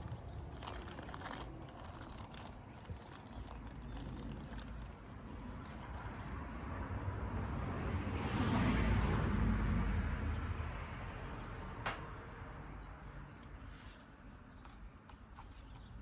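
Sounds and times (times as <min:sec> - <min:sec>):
vehicle passing: 0:03.4 - 0:13.2.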